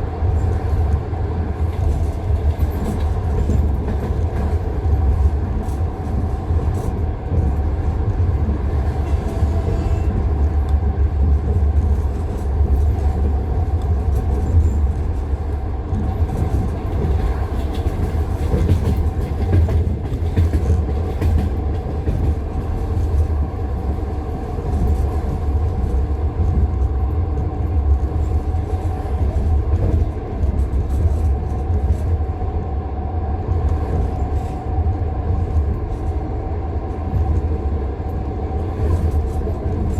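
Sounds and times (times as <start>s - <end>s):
train wheels clattering over rail joints: 16.0s - 23.1s.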